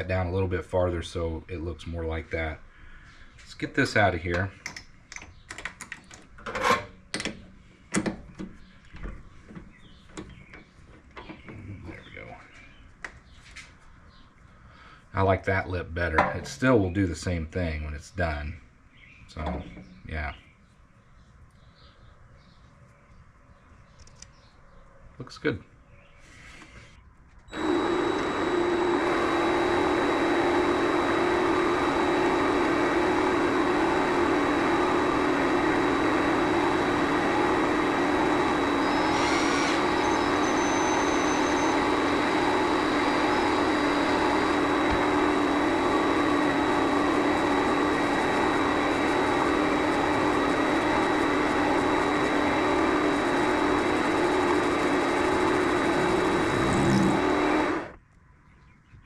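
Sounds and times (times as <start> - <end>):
high motor whine: 27.5 - 58.0
lathe running: 27.5 - 58.0
brief high squeal: 38.8 - 41.8.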